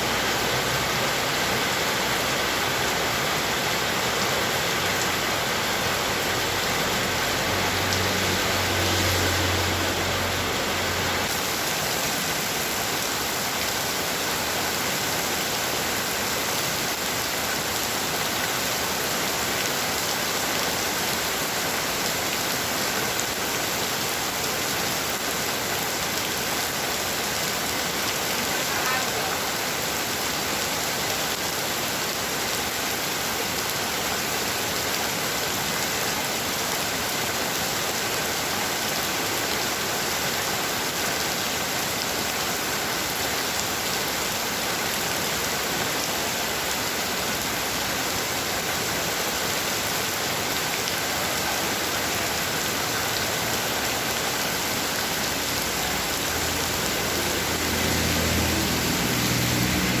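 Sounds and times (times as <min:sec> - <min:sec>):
heavy rain falling: 0:00.0 - 1:00.0.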